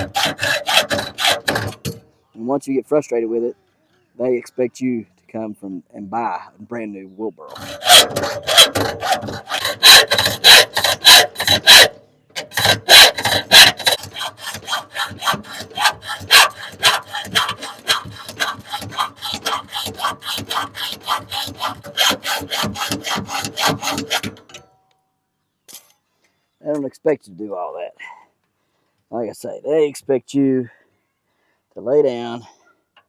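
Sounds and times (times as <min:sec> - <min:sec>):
hand tool strokes on wheelbarrow: 0:07.5 - 0:24.6.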